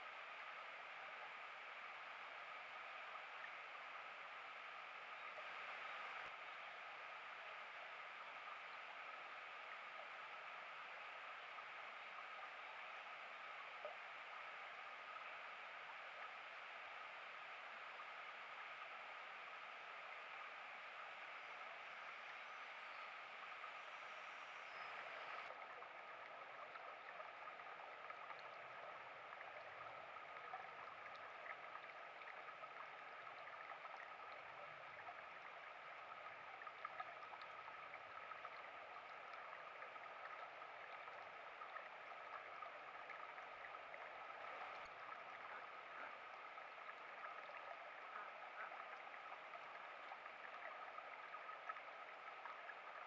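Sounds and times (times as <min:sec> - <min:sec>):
small stream running: 0:00.0 - 0:53.0.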